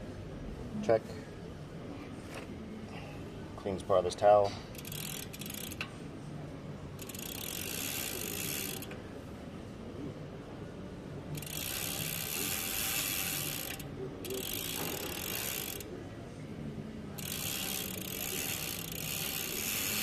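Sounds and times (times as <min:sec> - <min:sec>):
bicycle freewheel ratcheting: 0:04.7 - 0:05.9, 0:07.0 - 0:09.0, 0:11.3 - 0:15.9, 0:17.2 - 0:20.0.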